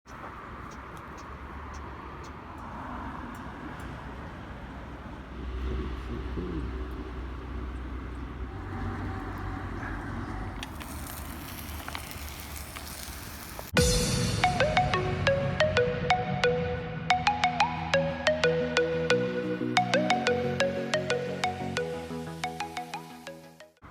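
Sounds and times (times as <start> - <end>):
faint scattered ticks: 0.1 - 4.0
marimba-like music: 13.8 - 23.6.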